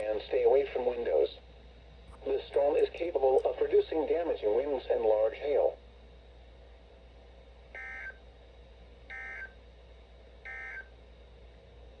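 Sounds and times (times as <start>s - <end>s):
faint steady hum: 0.0s - 12.0s
digital data tone bursts: 10.5s - 10.9s.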